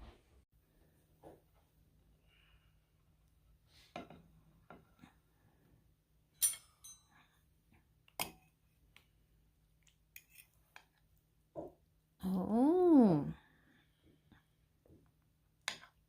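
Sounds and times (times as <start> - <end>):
dishes and cutlery clinking: 6.4 - 7.4.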